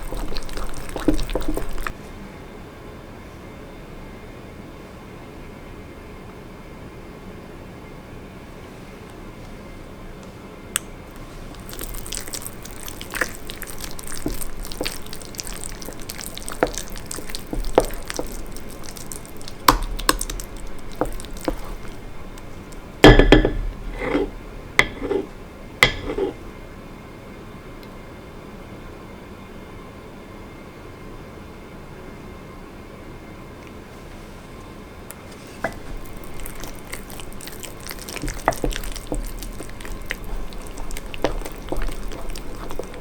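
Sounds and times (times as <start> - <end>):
slime squelching: 0.0 - 2.0, 11.1 - 26.4, 35.4 - 43.0
slime clicking and popping: 11.6 - 21.9.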